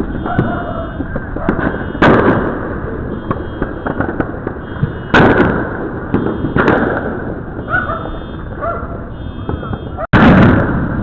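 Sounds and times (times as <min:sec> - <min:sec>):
firework pops and crackles: 0:00.0 - 0:07.7
loud firework bangs: 0:00.0 - 0:11.0.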